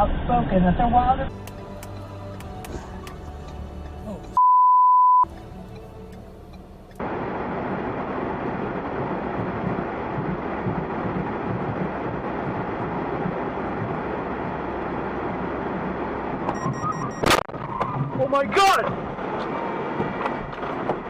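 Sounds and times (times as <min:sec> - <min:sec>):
vehicle driving noise: 0:05.2 - 0:21.0.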